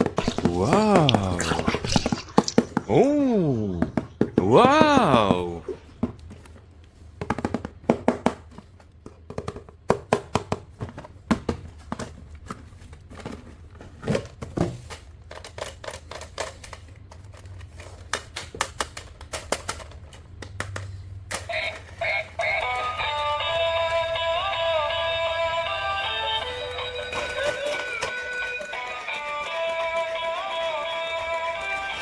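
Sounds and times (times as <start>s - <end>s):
plastic toys clicking and tapping: 14.8s - 24.4s, 26.0s - 32.0s.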